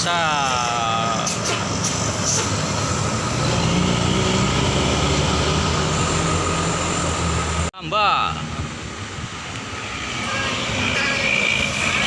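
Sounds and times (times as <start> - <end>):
diesel bus engine under load: 0.0 - 7.8
tyre and road noise: 0.0 - 12.0.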